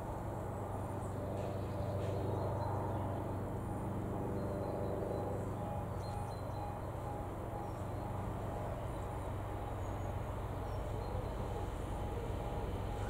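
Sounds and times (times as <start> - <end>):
faint beeping tone: 3.7 - 9.3.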